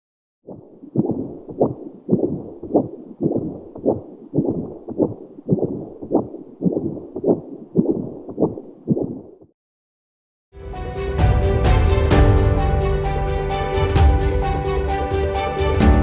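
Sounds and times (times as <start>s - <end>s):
fetal heartbeat whooshing pulse: 0.5s - 9.5s.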